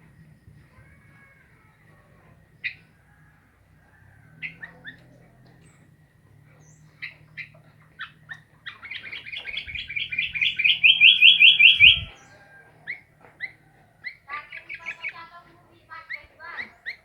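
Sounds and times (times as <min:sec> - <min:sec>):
bird chirping: 0:04.3 - 0:17.0.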